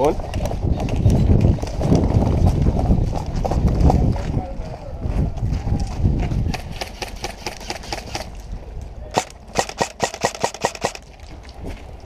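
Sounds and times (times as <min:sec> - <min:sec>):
airsoft gun shots: 0:06.6 - 0:08.3, 0:09.1 - 0:11.0.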